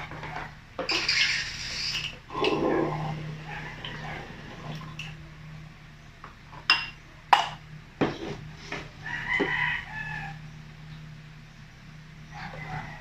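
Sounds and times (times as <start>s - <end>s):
steady low hum: 0.0s - 13.0s
glassware clinking: 6.7s - 7.6s
chicken calling: 9.0s - 10.5s.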